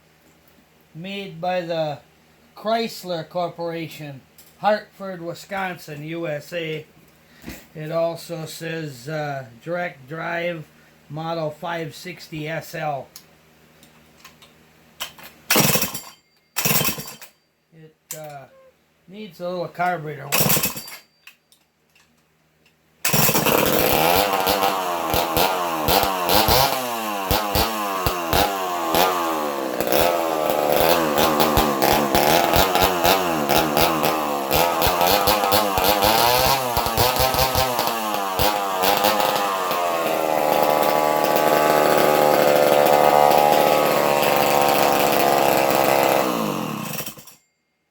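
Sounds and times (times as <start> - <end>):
chainsaw revving: 15.6 - 16.0, 16.6 - 17.2, 20.4 - 20.8, 23.0 - 47.4.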